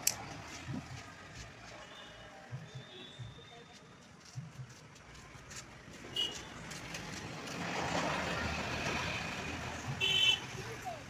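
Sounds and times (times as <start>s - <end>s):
vehicle running noisily: 0.0s - 11.0s.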